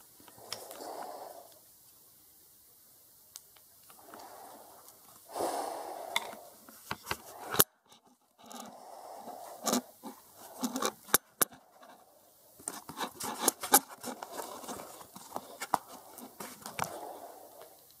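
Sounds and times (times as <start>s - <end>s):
scuffs and scrapes: 11.9s - 16.8s.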